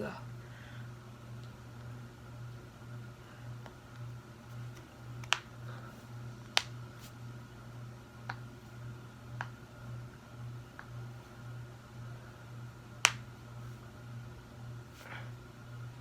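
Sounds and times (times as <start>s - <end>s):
low pulsing hum: 0.0s - 16.0s
knuckles cracking: 4.7s - 5.5s.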